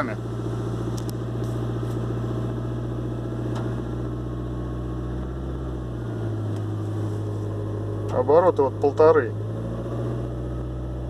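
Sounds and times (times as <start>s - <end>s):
diesel engine running: 0.0s - 11.0s.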